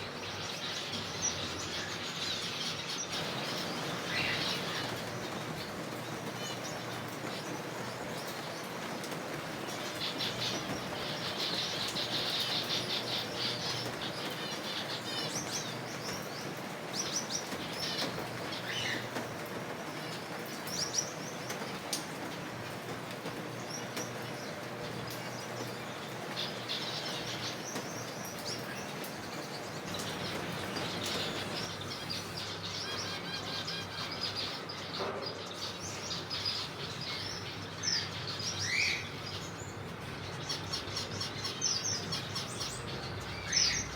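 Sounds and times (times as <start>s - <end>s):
finches calling: 1.2s - 9.0s.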